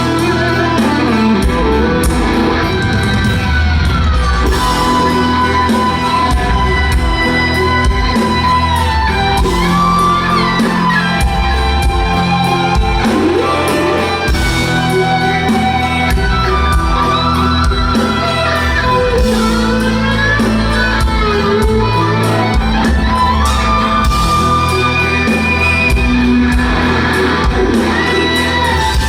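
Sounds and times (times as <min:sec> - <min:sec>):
electric guitar sliding notes: 0:00.0 - 0:29.0
live rock band: 0:00.0 - 0:29.0.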